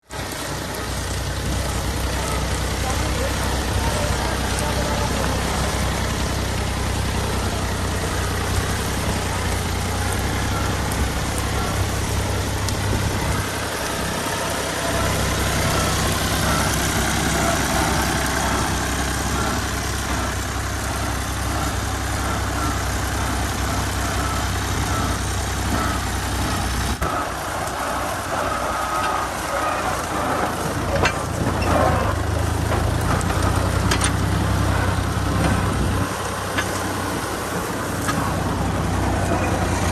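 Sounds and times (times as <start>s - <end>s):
tractor diesel engine droning: 0.0s - 39.9s.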